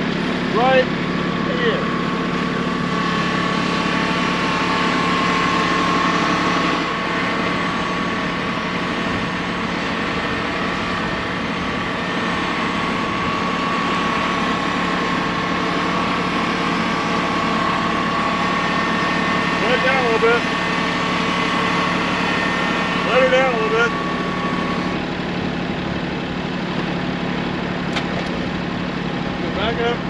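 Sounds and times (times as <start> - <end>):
high engine whine: 0.0 - 30.0
tractor engine running: 0.0 - 30.0.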